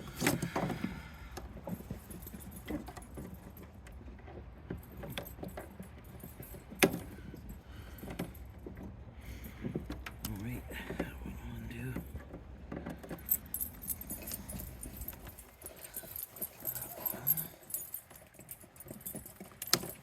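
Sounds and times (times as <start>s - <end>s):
metallic clinks of hand tools: 13.0s - 20.0s.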